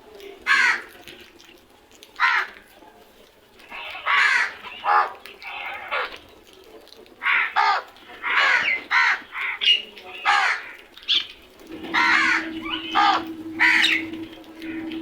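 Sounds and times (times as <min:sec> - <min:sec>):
crows cawing: 0:00.4 - 0:01.0, 0:02.2 - 0:02.7, 0:03.8 - 0:06.2, 0:07.2 - 0:09.6, 0:10.2 - 0:11.0, 0:11.7 - 0:15.0
steady low hum: 0:11.7 - 0:15.0.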